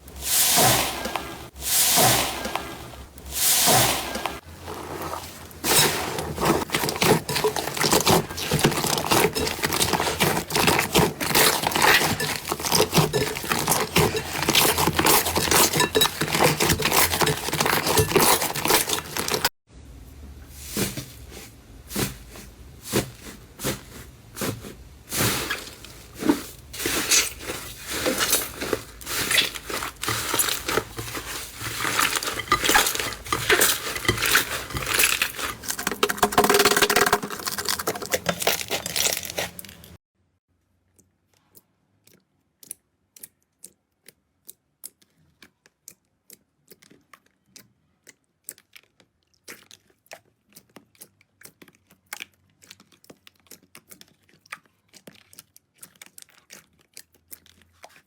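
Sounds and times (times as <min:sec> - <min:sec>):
slime squeezed crackling and popping: 0:34.9 - 0:40.0, 0:42.0 - 0:58.0.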